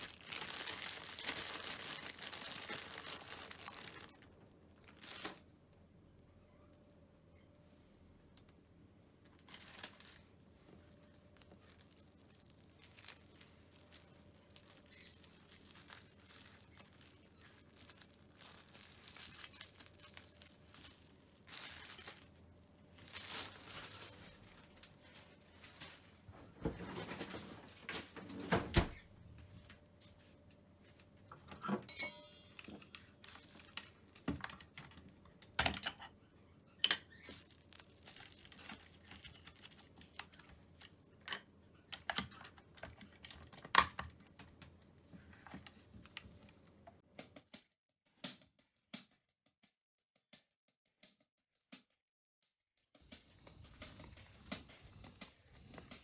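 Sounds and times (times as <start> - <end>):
rustling and crinkling: 0.0 - 5.5, 9.2 - 47.0.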